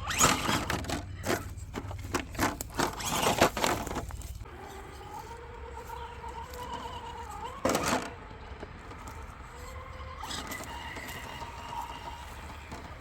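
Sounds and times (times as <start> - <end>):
electric motor whine: 2.9 - 13.0.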